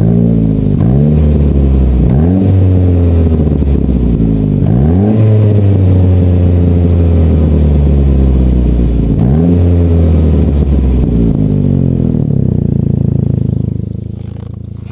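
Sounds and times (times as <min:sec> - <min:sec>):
car engine revving with loud exhaust: 0:00.0 - 0:14.9.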